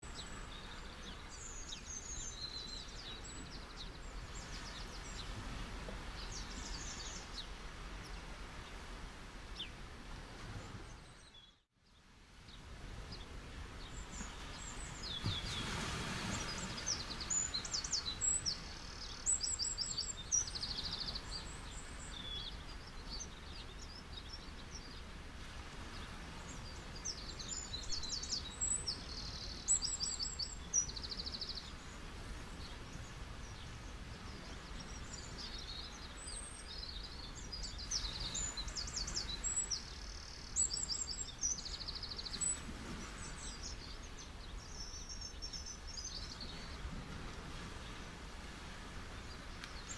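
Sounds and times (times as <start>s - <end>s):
soft steady hiss: 0.0s - 49.9s
small birds chirping: 10.8s - 25.1s, 25.9s - 46.8s.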